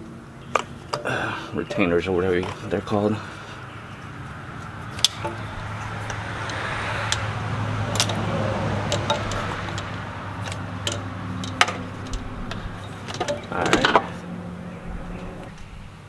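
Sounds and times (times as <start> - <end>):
car passing: 0.0 - 16.0
steady low hum: 0.0 - 16.0
sharp plastic clicks: 4.8 - 16.0.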